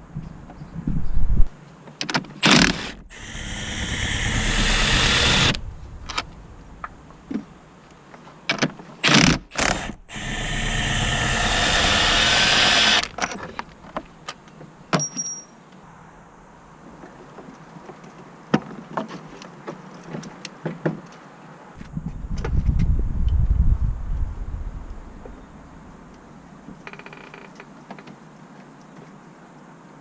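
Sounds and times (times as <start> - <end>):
cordless power tool running: 2.4 - 5.7, 9.5 - 13.2.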